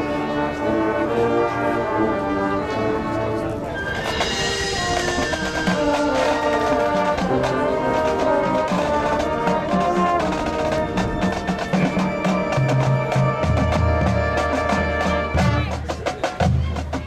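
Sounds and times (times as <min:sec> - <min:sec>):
marching band playing: 0:00.0 - 0:17.0
drum strokes: 0:03.9 - 0:17.0.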